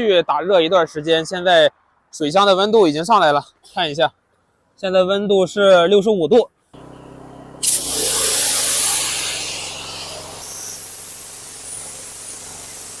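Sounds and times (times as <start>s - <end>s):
machine hum: 6.8s - 13.0s
high-pressure water spray hiss: 7.6s - 13.0s.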